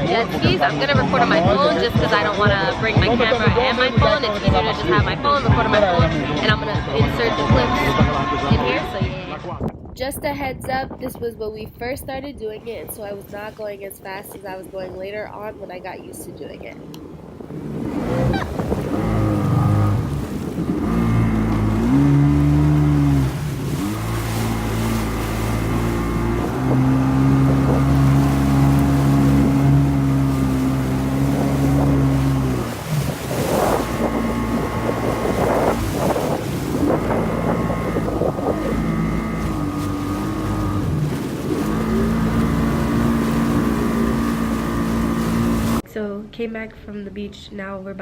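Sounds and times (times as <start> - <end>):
jet ski engine revving: 0.0 - 8.0, 16.9 - 45.8
rushing splashing water: 17.1 - 45.8.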